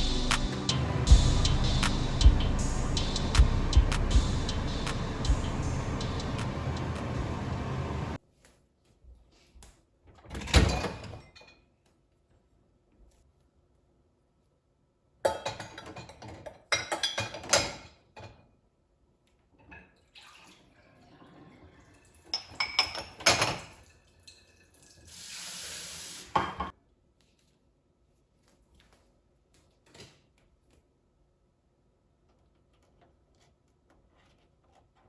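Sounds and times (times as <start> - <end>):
dishes and cutlery clattering: 15.3 - 18.4, 22.3 - 23.8.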